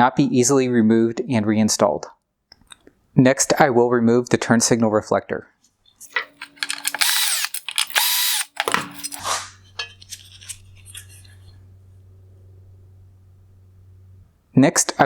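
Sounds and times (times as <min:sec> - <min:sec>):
electric screwdriver running: 0:06.1 - 0:09.3
clicks and taps of parts handled: 0:06.1 - 0:11.3.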